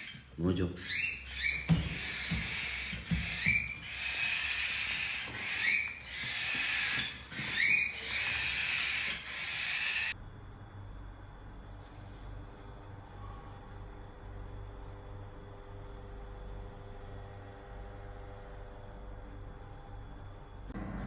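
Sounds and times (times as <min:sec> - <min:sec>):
bird squawking: 0:00.0 - 0:10.1.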